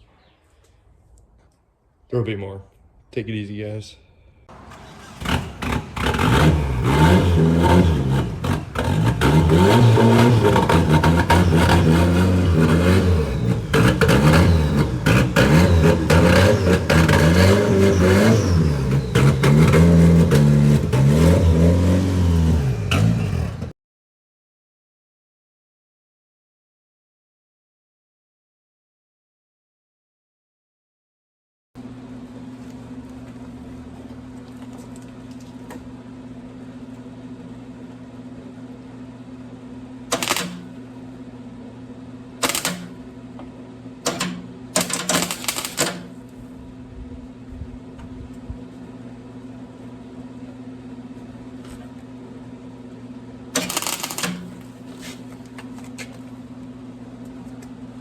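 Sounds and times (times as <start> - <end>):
steady welder hum: 40.0 - 47.0, 53.4 - 55.6
welding arc crackle: 40.1 - 40.6, 42.4 - 42.9, 44.8 - 46.0.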